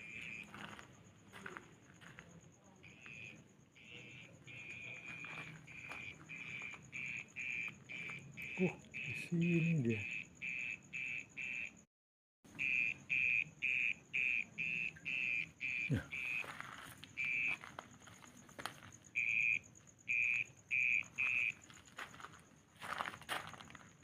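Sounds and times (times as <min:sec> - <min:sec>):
faint insect-like hum: 0:00.0 - 0:11.9, 0:12.5 - 0:24.0.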